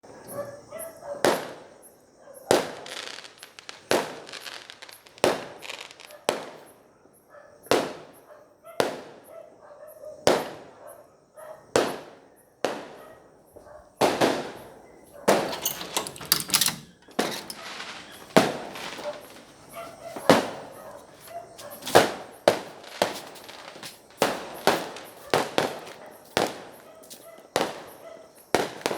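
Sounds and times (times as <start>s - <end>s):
firework cake bangs: 2.6s - 6.7s, 11.8s - 13.0s, 14.0s - 15.5s, 17.0s - 26.9s, 28.6s - 28.9s.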